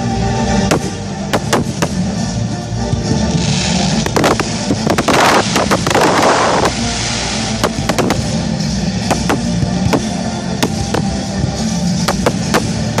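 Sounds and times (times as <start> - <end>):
fireworks crackling: 0.8 - 13.0
fireworks bangs: 3.0 - 11.1.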